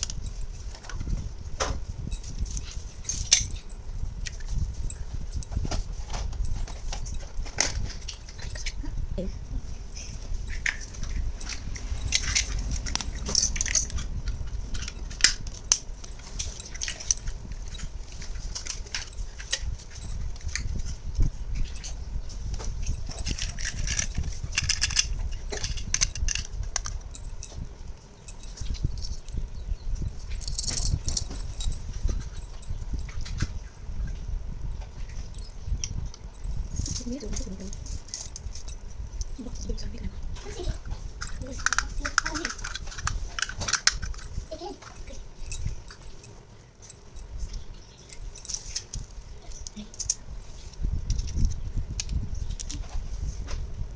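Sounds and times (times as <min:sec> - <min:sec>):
plastic toy pieces rattling: 0:10.5 - 0:20.6, 0:23.2 - 0:27.0, 0:40.5 - 0:46.0
plastic toy pieces clicking: 0:23.3 - 0:27.0, 0:41.2 - 0:44.3.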